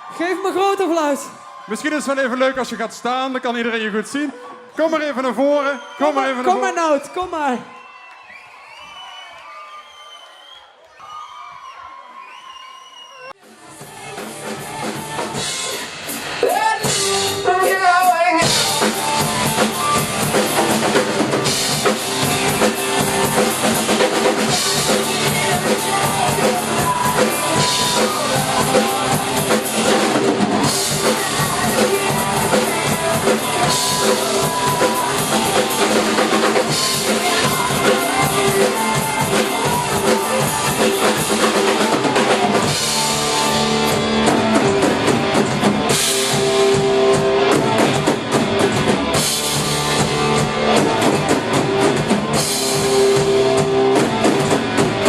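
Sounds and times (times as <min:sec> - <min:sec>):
band music: 0:13.4 - 0:55.0
drum kit and bass drum: 0:13.7 - 0:55.0.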